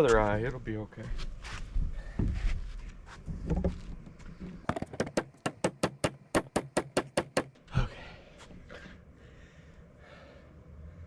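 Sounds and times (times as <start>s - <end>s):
hammer blows on spike: 4.8s - 7.5s.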